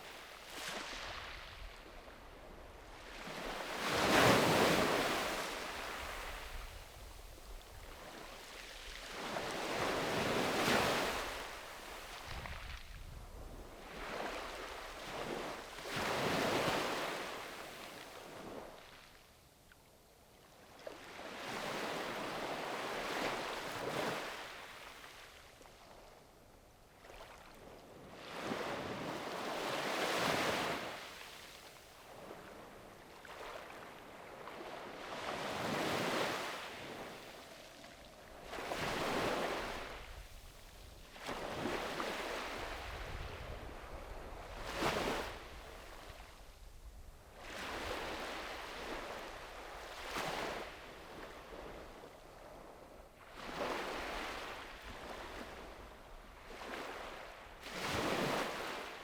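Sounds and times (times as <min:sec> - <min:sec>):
sea waves breaking on a beach: 0:00.0 - 0:19.2, 0:20.6 - 0:26.2, 0:26.9 - 0:59.0.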